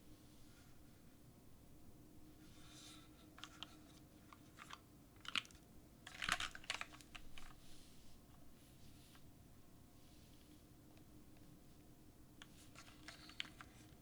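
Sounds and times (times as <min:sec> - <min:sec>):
typing on mechanical keyboard: 0:04.6 - 0:07.6.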